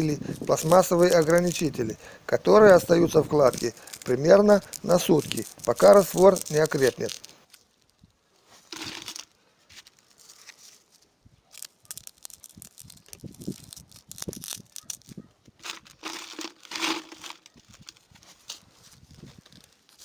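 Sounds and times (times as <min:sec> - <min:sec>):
trowel scraping mortar: 0:15.6 - 0:17.8.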